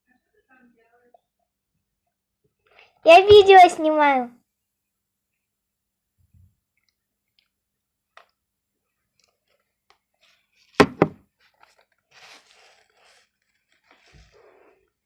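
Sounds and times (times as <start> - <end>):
rustling and crinkling: 9.0 - 15.0
sharp knocks: 10.8 - 11.2.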